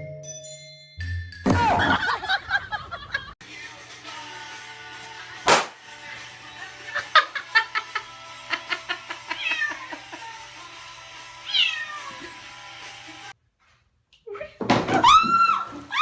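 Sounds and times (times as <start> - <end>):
background music: 3.4 - 13.3
sharp knock: 5.5 - 5.8
cat meowing: 9.4 - 9.9, 11.4 - 12.2.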